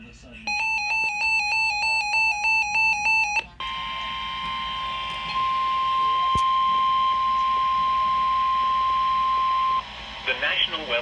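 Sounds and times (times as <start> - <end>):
two-tone warbling electronic alarm: 0.5 - 9.8
steady single-pitch warning tone: 0.5 - 9.9
radio hiss: 9.8 - 11.0.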